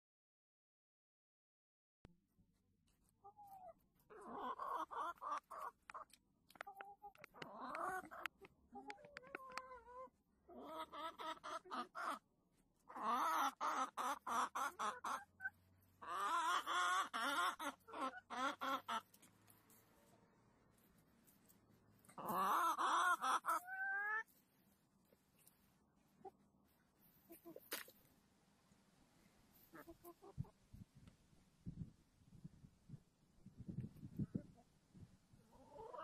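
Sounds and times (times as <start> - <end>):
chickens clucking and squawking: 3.2 - 19.2, 22.0 - 24.4, 27.1 - 27.9, 29.5 - 30.8, 35.3 - 36.0.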